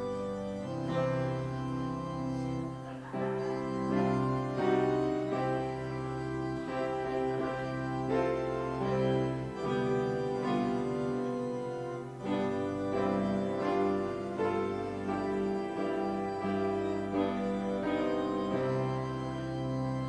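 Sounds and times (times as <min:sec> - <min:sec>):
organ playing slow chords: 0:00.0 - 0:20.0.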